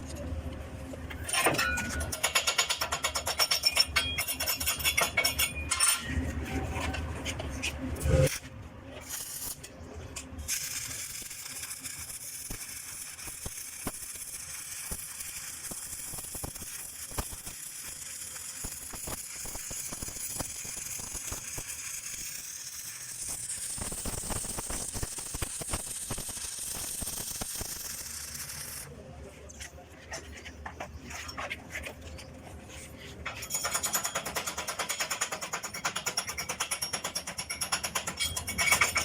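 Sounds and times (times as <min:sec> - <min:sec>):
arc welding crackling sizzle: 0:07.9 - 0:29.6.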